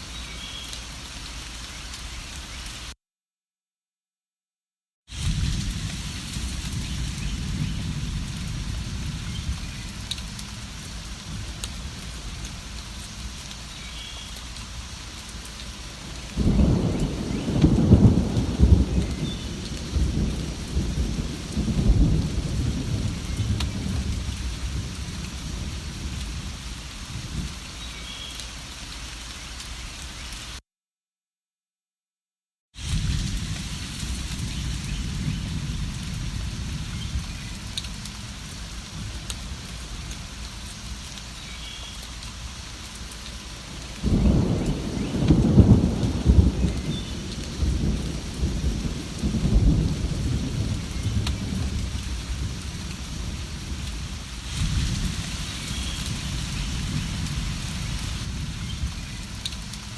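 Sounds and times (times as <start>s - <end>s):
steady rain: 0.0s - 3.0s, 5.1s - 30.6s, 32.8s - 59.9s
low rumble of thunder: 5.1s - 13.2s, 16.0s - 27.6s, 32.8s - 40.6s, 43.7s - 59.9s.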